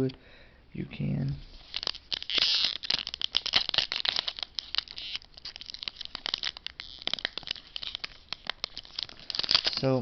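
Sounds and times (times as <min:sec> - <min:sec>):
foil wrapper crinkling: 0:01.5 - 0:10.0.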